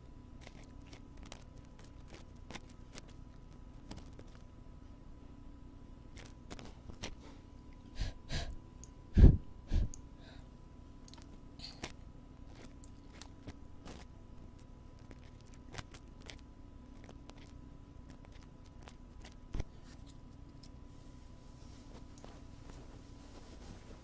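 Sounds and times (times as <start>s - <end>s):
faint steady hum: 0.0s - 24.0s
light scratches and clicks: 0.4s - 4.5s, 6.1s - 7.2s, 11.1s - 20.8s.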